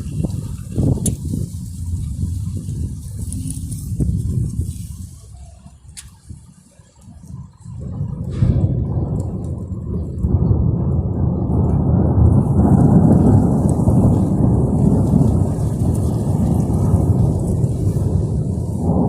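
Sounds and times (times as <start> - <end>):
low rough storm rumble: 0.0 - 19.0
rain hiss: 0.0 - 19.0.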